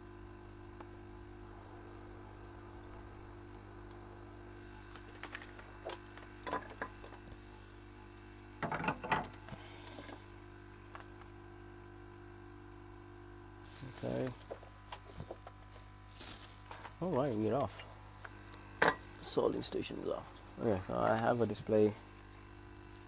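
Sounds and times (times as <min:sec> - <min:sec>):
electrical hum of equipment: 0:00.0 - 0:23.0
small clicks and handling noises: 0:04.6 - 0:07.5, 0:13.7 - 0:19.2.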